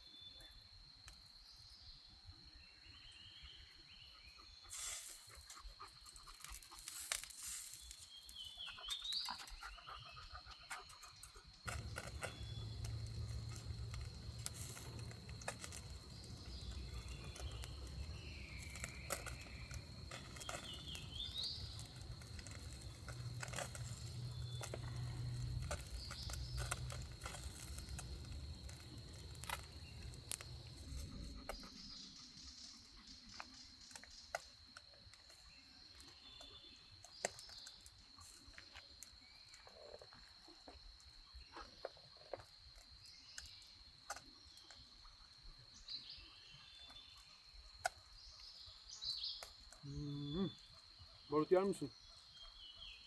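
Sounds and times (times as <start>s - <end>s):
campfire crackling: 4.6s - 52.8s
bird chirps: 7.7s - 34.5s, 45.8s - 53.0s
low rumble: 11.7s - 20.3s.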